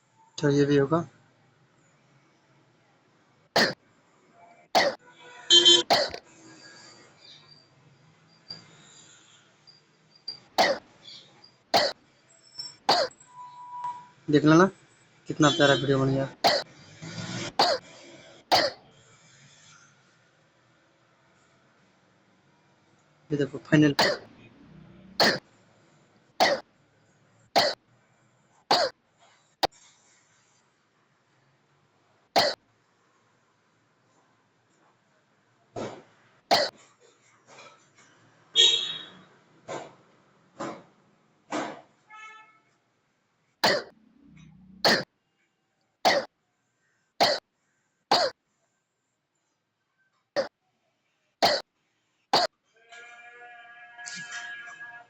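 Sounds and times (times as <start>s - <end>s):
person coughing: 3.6s - 3.8s, 4.8s - 5.0s, 5.8s - 6.2s, 10.6s - 10.8s, 11.8s - 12.0s, 12.9s - 13.1s, 16.4s - 16.7s, 17.6s - 17.8s, 18.5s - 18.8s, 23.9s - 24.3s, 25.2s - 25.4s, 26.4s - 26.6s, 27.6s - 27.8s, 28.7s - 28.9s, 32.4s - 32.6s, 36.5s - 36.8s, 43.6s - 43.9s, 44.8s - 45.0s, 46.1s - 46.3s, 48.1s - 48.3s, 51.4s - 51.6s.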